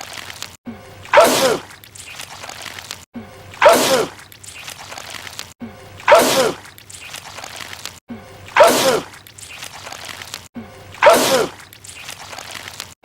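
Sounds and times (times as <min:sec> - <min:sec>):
man sneezing: 0:06.1 - 0:06.6, 0:08.6 - 0:09.1, 0:11.0 - 0:11.6.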